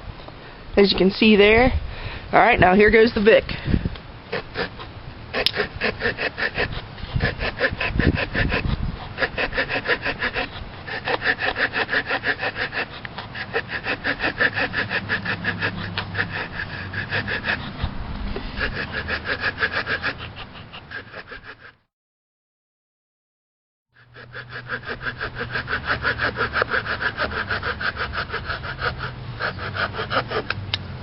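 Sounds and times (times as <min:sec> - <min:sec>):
saw cutting through log: 0:04.3 - 0:21.9, 0:24.0 - 0:30.6.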